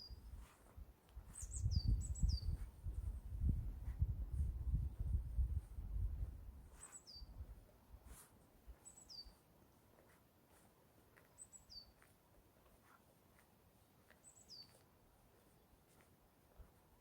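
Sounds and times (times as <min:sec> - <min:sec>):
small songbird calling: 0:00.0 - 0:00.4, 0:01.3 - 0:02.6, 0:06.8 - 0:07.4, 0:08.7 - 0:09.4, 0:11.2 - 0:12.1, 0:14.0 - 0:14.9
wind rumble on microphone: 0:00.1 - 0:08.2.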